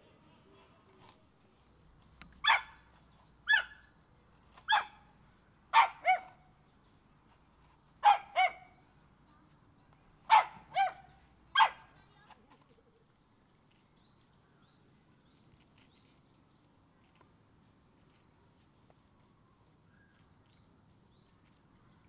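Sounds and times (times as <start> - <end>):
dog barking: 2.4 - 2.8, 3.5 - 3.8, 4.7 - 5.0, 5.7 - 6.4, 8.0 - 8.8, 10.3 - 11.9.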